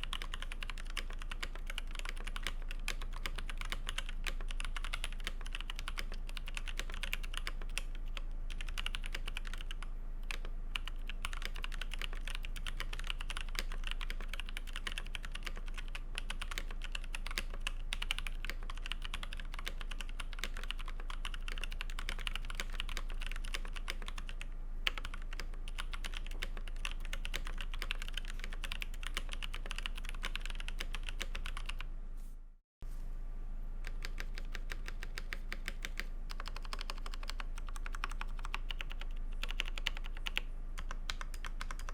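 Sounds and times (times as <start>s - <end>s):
typing on mechanical keyboard: 0.0s - 31.8s, 33.8s - 41.9s.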